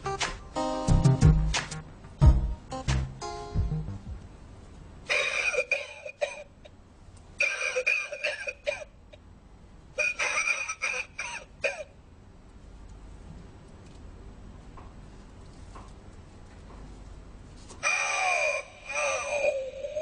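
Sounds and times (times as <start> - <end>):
recorded coughing from small speaker: 5.1 - 6.7, 7.4 - 9.0, 10.0 - 12.0, 17.8 - 20.0.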